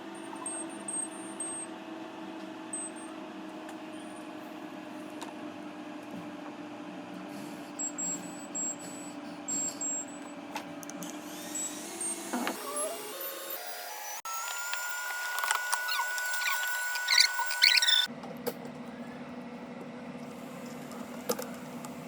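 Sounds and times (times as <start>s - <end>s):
electric fan whirring hum: 0.0s - 22.0s
short high-pitched beeps: 15.8s - 18.1s.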